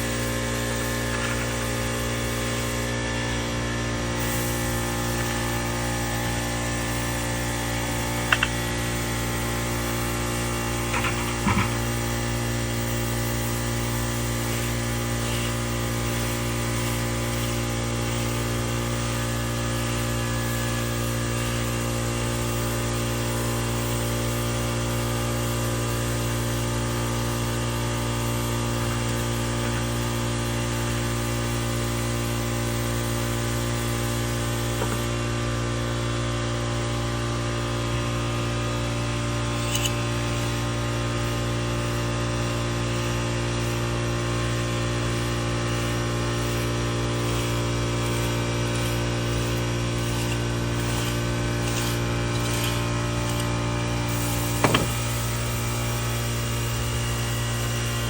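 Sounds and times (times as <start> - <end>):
motor humming: 0.0 - 21.7, 34.1 - 35.8, 44.4 - 58.0.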